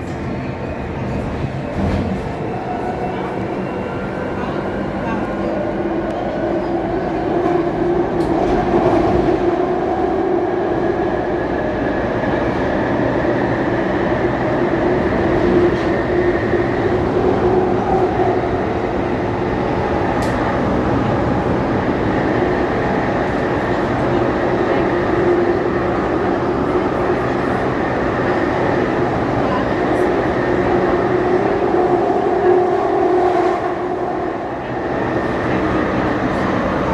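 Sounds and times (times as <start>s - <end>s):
underground train rumbling: 0.0s - 36.9s.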